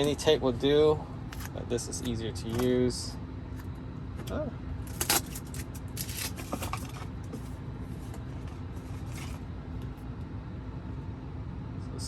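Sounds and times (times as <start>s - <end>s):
ventilation fan hum: 0.0s - 12.0s
tape rustling and tearing: 4.9s - 6.9s.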